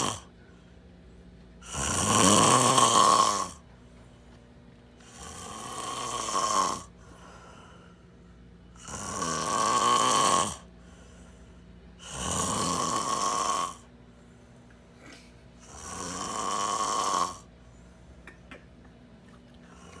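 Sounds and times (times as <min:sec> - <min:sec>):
person snoring loudly: 0:00.0 - 0:00.3, 0:01.6 - 0:03.6, 0:05.0 - 0:06.9, 0:08.8 - 0:10.7, 0:12.0 - 0:13.9, 0:15.6 - 0:17.5.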